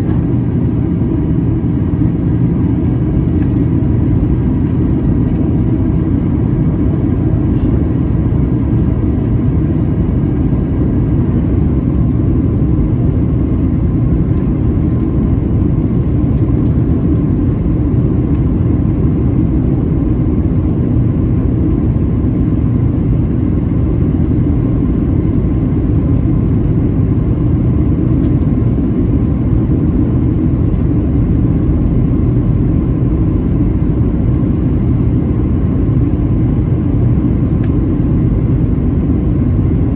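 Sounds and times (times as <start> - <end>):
airplane cabin airflow rush: 0.0 - 39.9
faint engine whine: 0.0 - 39.9
jet engine hum: 0.0 - 39.9.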